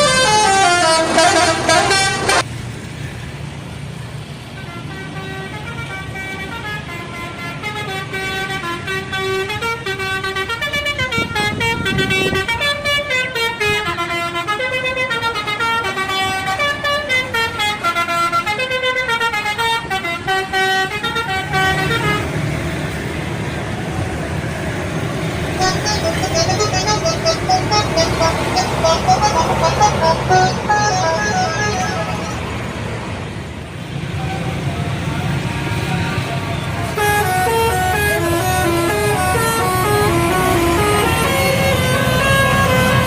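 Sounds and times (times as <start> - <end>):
musical air horn melody: 0.0 - 2.4, 25.6 - 32.8, 36.9 - 43.0
bus engine running: 0.0 - 43.0.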